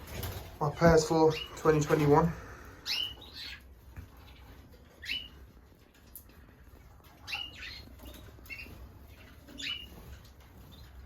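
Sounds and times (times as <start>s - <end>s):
canary contact calls: 1.2s - 11.0s
faint bird chirp: 2.6s - 6.3s, 7.0s - 11.0s.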